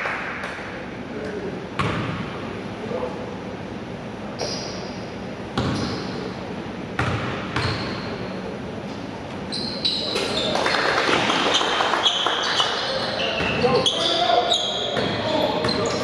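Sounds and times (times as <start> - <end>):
voices in a hall: 0.0 - 7.0, 7.9 - 16.0
basketball bouncing on gym floor: 1.8 - 2.4, 5.6 - 6.1, 7.0 - 8.1, 14.9 - 16.0
shoe squeaks: 4.4 - 6.3, 7.6 - 8.4, 9.5 - 10.7, 11.4 - 16.0.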